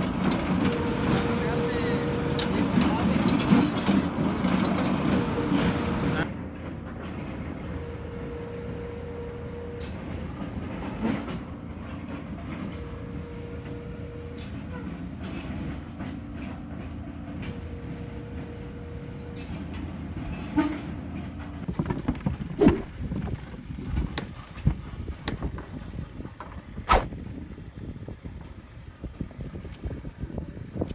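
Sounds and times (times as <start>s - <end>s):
piling machine humming: 0.0s - 6.3s.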